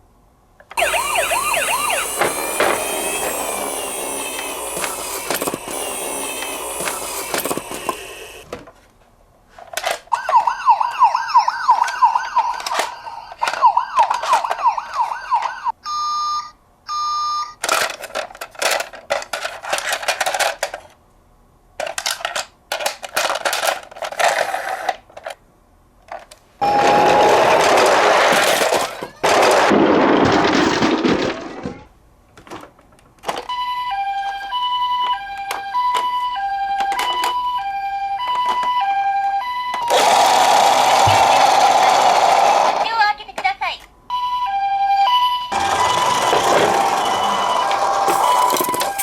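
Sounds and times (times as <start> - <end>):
fast warbling toy siren: 0.8 - 8.4, 10.1 - 17.4, 26.6 - 28.0, 33.5 - 42.0, 44.1 - 49.0
siren sweeping up and down: 0.8 - 8.4, 10.2 - 15.7, 44.1 - 49.0
plastic clicking and clattering: 17.6 - 21.0, 21.8 - 25.4, 30.2 - 33.5.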